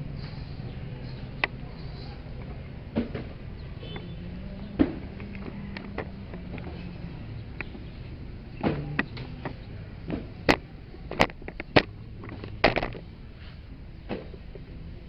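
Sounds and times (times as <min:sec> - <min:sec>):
tools and parts knocking: 0:02.4 - 0:13.1.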